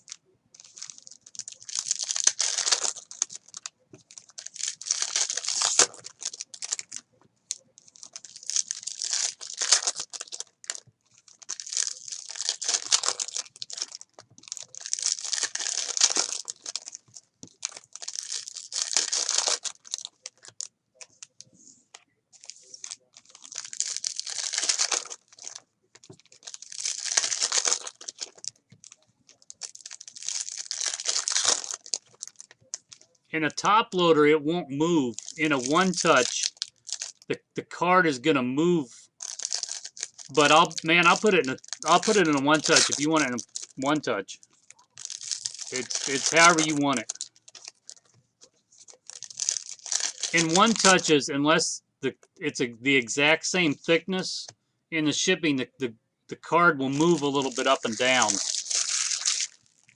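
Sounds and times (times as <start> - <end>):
foil wrappers crinkling: 0.0 - 21.6, 22.4 - 33.3, 35.0 - 37.4, 39.1 - 51.1, 56.9 - 59.9
card packs tearing open: 0.6 - 21.2, 22.4 - 33.0, 35.1 - 37.3, 39.2 - 44.0, 44.7 - 48.1, 48.8 - 51.1, 56.9 - 59.9.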